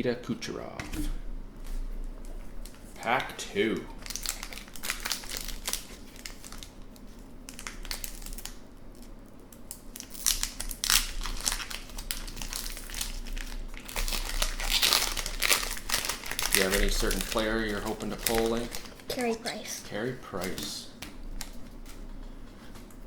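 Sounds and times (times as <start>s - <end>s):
plastic wrapper tearing and crinkling: 4.0s - 19.4s.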